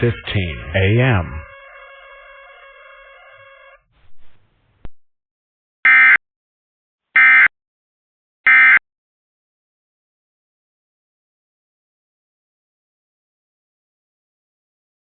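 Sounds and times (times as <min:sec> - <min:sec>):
digital data tone bursts: 0:00.0 - 0:03.7.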